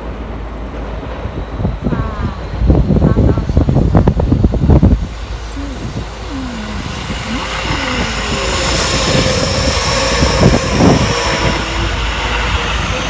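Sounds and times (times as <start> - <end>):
electric train approaching: 0.0 - 13.0
thin high whine: 4.8 - 13.0.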